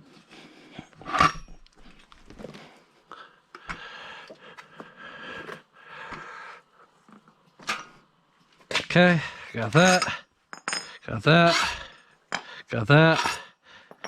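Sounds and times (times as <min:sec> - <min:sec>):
metal scraping: 0:11.2 - 0:12.0.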